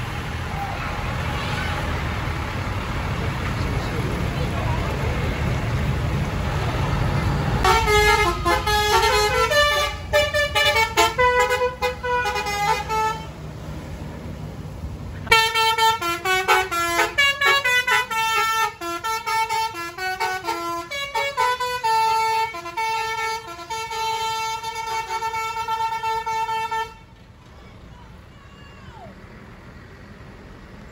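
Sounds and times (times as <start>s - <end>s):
low engine rumble: 0.0s - 30.9s
musical bus horn tune: 7.6s - 13.4s, 15.3s - 27.1s.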